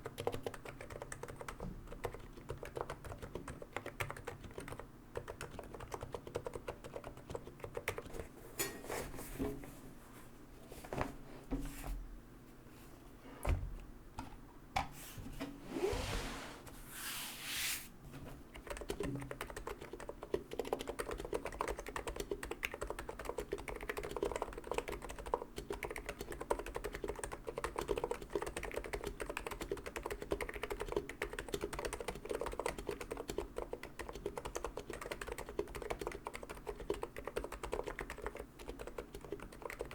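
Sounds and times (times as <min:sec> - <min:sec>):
keyboard typing: 0:00.0 - 0:08.2, 0:18.5 - 0:39.9.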